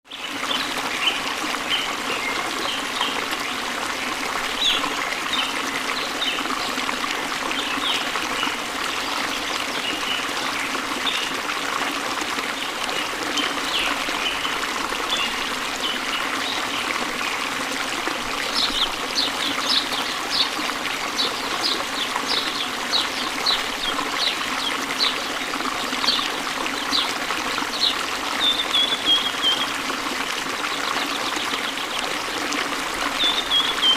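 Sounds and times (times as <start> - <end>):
waterfall rushing: 0.4 - 33.9
birds chirping: 27.7 - 29.7, 33.2 - 33.9.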